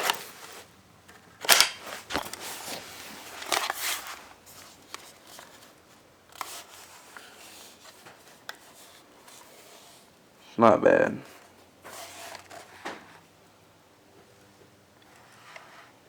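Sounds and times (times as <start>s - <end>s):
rifle action clicking: 1.4s - 2.2s.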